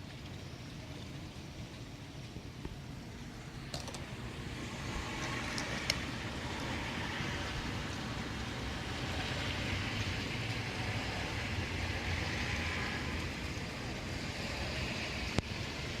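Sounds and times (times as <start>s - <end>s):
rain hiss: 0.0s - 16.0s
traffic on wet streets: 3.4s - 16.0s.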